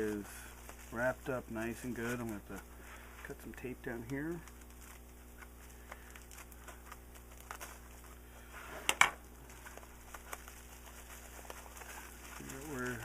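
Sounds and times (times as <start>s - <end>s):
wrapping crinkling: 0.0s - 13.0s
tape ripping: 4.0s - 8.1s, 9.5s - 13.0s.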